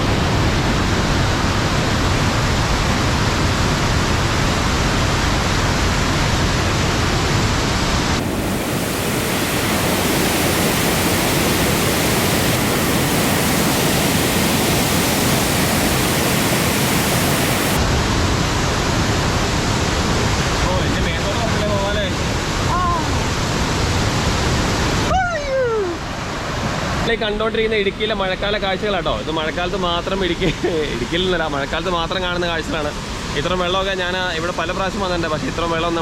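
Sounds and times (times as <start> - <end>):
floodwater rushing: 0.0 - 27.1.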